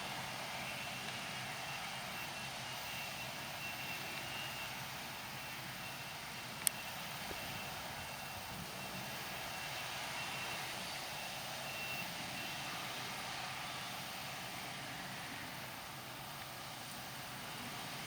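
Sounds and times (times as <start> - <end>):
distant machinery: 0.0 - 18.0
reversing alarm beeping: 0.5 - 12.8.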